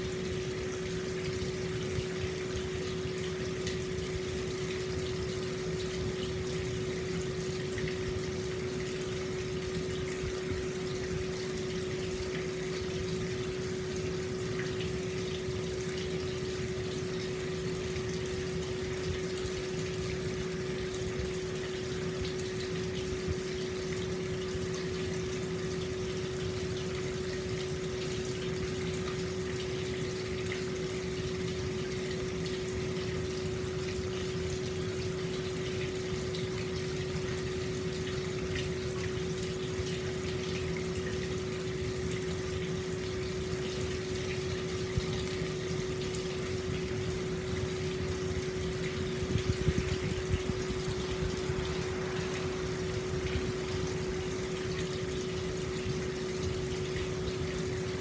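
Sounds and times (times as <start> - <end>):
steady humming tone: 0.0 - 58.0
water splashing into bath: 34.9 - 58.0.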